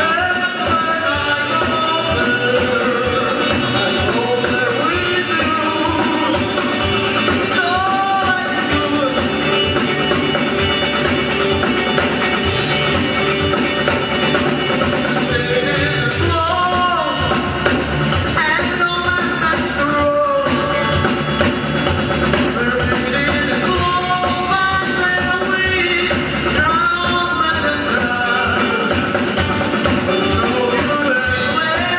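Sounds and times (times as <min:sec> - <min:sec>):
person singing: 0:00.0 - 0:31.9
rock band playing: 0:00.0 - 0:31.9.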